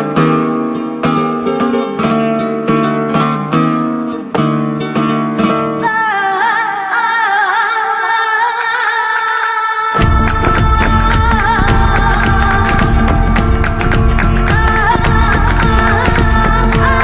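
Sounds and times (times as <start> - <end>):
ornamented singing voice: 5.8 - 17.0
heavy bass and beat: 10.0 - 17.0
strummed guitar chords: 10.0 - 17.0.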